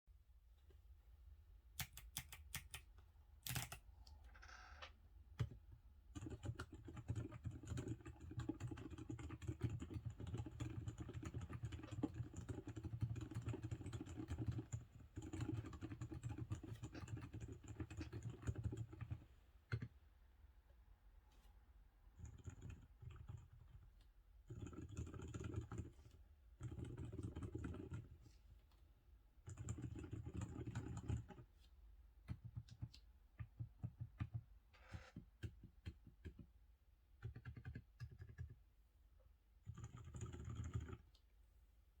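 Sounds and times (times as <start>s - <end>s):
quiet mechanical keyboard typing: 1.6s - 20.0s, 22.1s - 28.7s, 29.3s - 41.4s.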